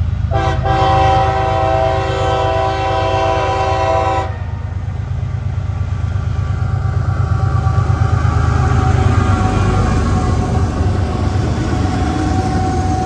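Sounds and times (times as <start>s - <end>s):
diesel train engines rumbling: 0.0s - 13.0s
locomotive air horn: 0.3s - 4.6s.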